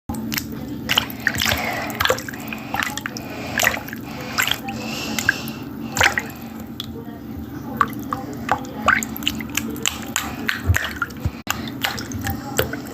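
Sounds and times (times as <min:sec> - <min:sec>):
water dripping into water: 0:00.1 - 0:07.0, 0:07.7 - 0:12.9
steady low hum: 0:00.1 - 0:12.9.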